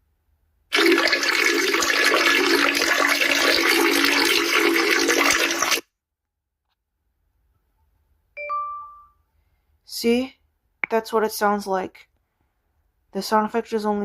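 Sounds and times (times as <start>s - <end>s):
liquid stream splashing into toilet: 0.7s - 5.8s.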